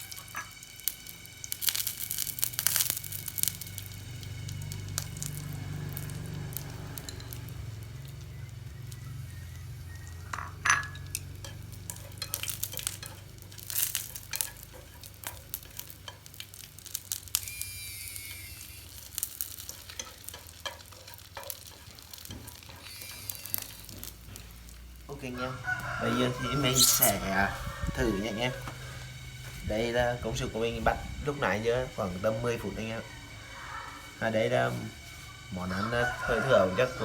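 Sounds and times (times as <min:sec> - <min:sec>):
insects sizzling in hot oil: 0:00.0 - 0:37.0
utensil stirring in pan: 0:09.0 - 0:27.4
utensil clinking against pan: 0:10.2 - 0:16.3.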